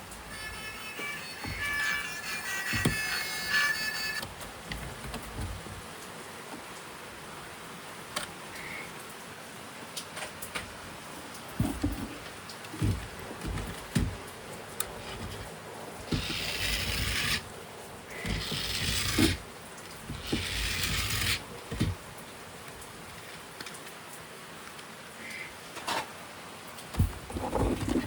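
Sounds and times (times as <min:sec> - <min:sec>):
rasping scraping: 0:00.0 - 0:05.8, 0:11.6 - 0:17.5, 0:18.1 - 0:22.1, 0:27.0 - 0:28.0.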